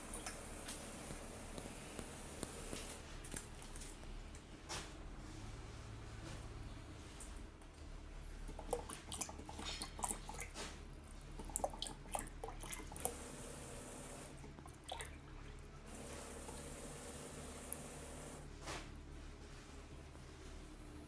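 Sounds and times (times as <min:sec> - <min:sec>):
water dripping: 0:00.0 - 0:00.4, 0:11.4 - 0:13.2, 0:14.4 - 0:15.6.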